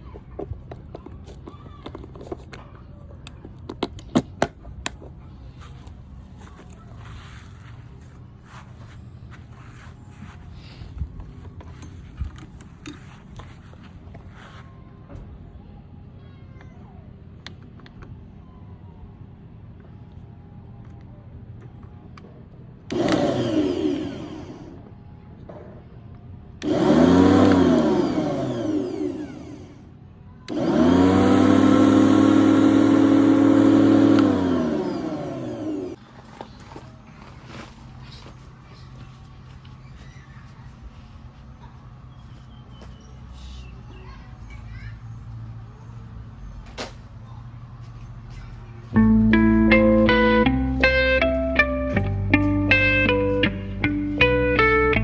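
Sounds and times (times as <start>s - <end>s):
electric lawn mower humming: 22.9s - 24.9s, 26.6s - 29.9s, 30.5s - 36.0s.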